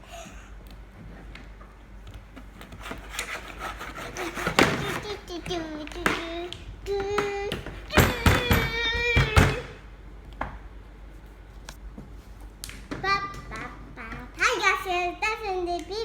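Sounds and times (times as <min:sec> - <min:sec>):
plastic toy knocks and rubbing: 0:02.3 - 0:05.2.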